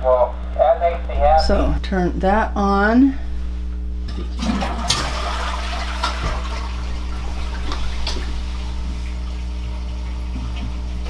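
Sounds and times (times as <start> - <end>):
low hum: 0.0 - 11.0
water running through pipes: 4.0 - 11.0.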